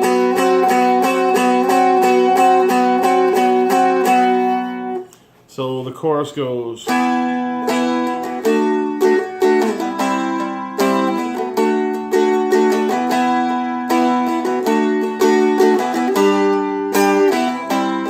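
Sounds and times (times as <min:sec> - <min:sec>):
dulcimer chords strummed: 0:06.9 - 0:18.0.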